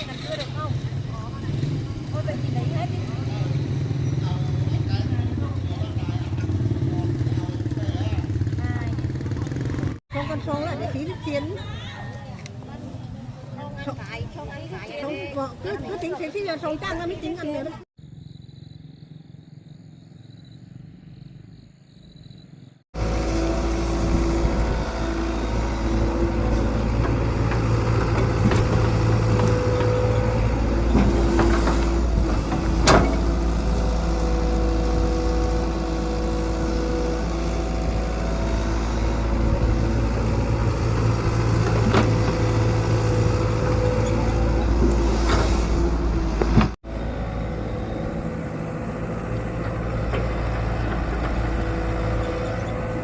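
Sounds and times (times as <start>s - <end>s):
excavator diesel engine rumbling: 23.0s - 53.0s.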